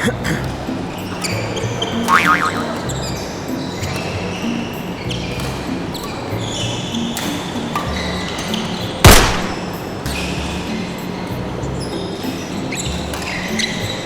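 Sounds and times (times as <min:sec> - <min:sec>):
rackets hitting shuttlecock: 0:00.4 - 0:14.0
shoes squeaking on floor: 0:00.4 - 0:14.0
loud sharp crack: 0:09.0 - 0:10.0.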